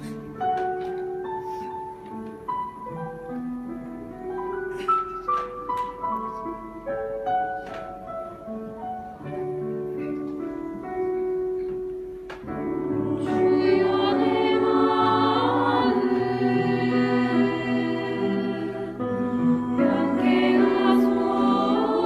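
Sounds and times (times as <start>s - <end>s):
piano accompaniment: 0.0s - 22.0s
choir singing a hymn: 12.4s - 22.0s.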